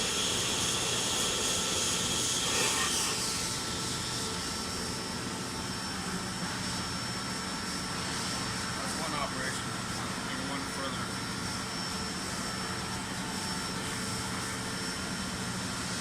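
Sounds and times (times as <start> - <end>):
broad hiss: 0.0 - 3.5
machine hum with whining tones: 0.0 - 16.0.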